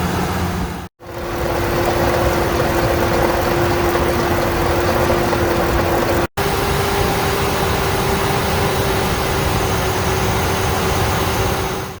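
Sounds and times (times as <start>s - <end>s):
car engine idling with whine: 0.0s - 12.0s.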